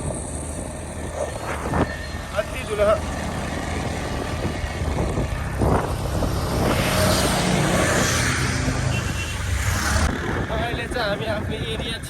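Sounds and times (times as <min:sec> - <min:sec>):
road and traffic noise: 0:00.0 - 0:12.0
vehicle engine rumble: 0:00.0 - 0:12.0.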